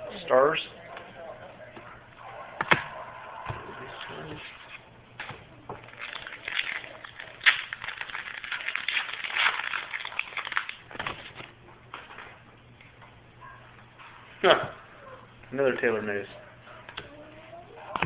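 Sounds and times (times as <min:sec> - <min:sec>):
cards shuffling: 0:04.4 - 0:11.5
foil wrapper crinkling: 0:05.8 - 0:11.5.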